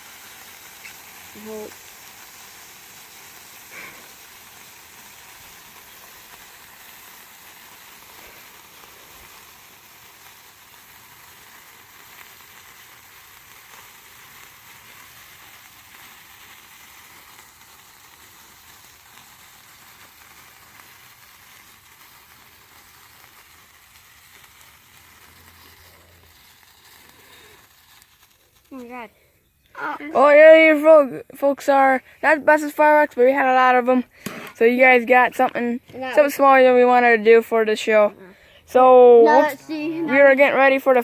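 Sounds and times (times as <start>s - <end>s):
firework fountain hissing: 0.0s - 41.0s
faint pop: 34.2s - 34.6s.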